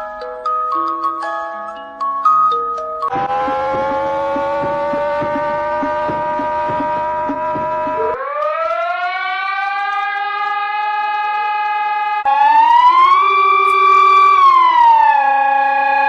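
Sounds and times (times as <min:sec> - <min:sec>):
steady tone: 0:03.1 - 0:08.2
loud siren rising and falling: 0:03.1 - 0:16.0
siren winding up: 0:03.1 - 0:16.0.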